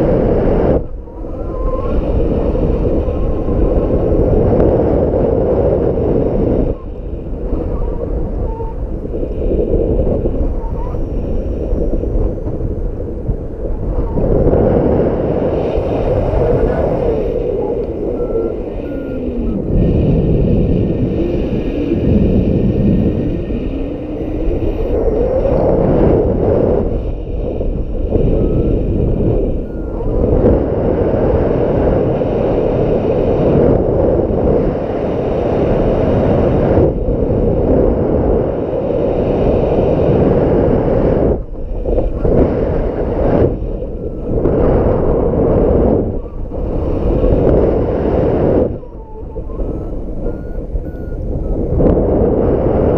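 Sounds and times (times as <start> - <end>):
wind buffeting microphone: 0.0 - 52.9.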